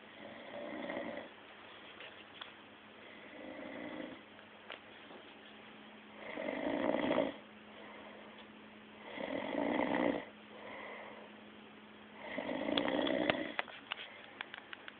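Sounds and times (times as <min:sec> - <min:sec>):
quiet breaths: 0:00.0 - 0:14.8
person snoring: 0:00.2 - 0:01.3, 0:03.1 - 0:04.2, 0:06.2 - 0:07.4, 0:09.0 - 0:11.3, 0:12.2 - 0:13.6.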